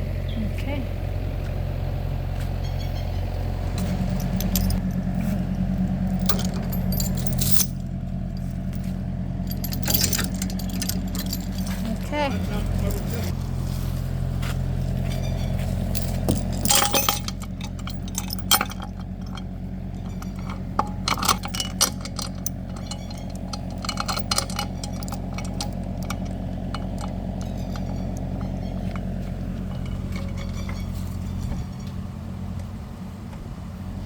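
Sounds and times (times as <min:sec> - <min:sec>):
motor humming: 0:00.0 - 0:34.0
metallic clinks and rattles: 0:03.8 - 0:05.2, 0:06.0 - 0:13.4, 0:15.1 - 0:31.9.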